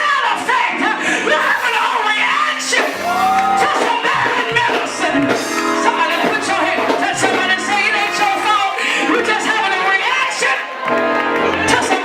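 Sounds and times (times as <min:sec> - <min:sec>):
people singing: 0:00.0 - 0:10.7
band playing: 0:00.4 - 0:12.0
people shouting: 0:03.0 - 0:04.1.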